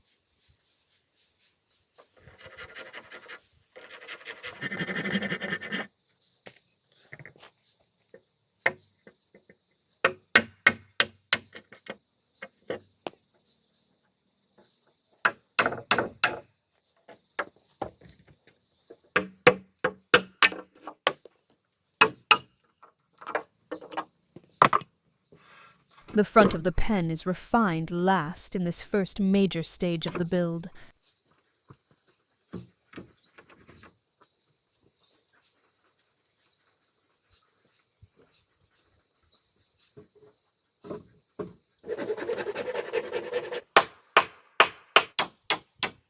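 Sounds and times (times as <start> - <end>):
tool striking timber: 10.1 - 11.7, 15.3 - 16.4, 19.2 - 21.2, 22.0 - 22.5, 43.8 - 46.0.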